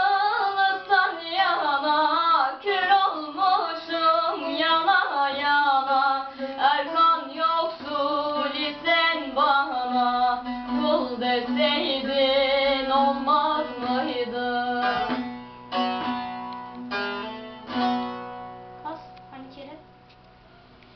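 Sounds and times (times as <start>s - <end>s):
woman singing: 0.0s - 15.2s
plucked string instrument: 0.0s - 20.3s.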